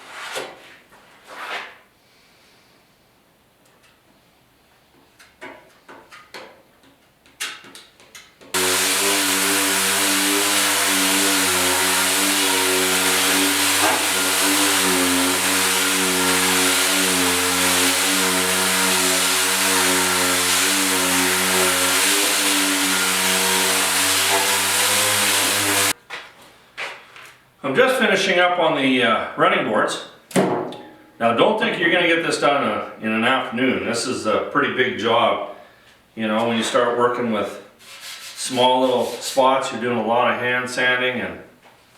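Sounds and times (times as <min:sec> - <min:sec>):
power sander on steel: 0:08.6 - 0:26.0.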